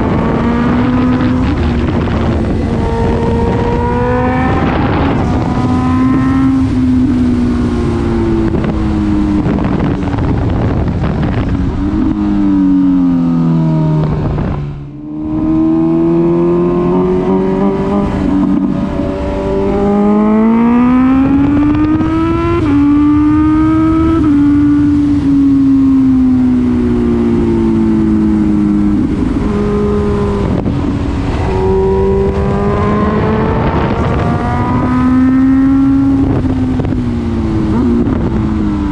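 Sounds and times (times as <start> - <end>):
motorcycle engine revving: 0.0 - 38.9
wind noise on microphone: 0.0 - 38.9.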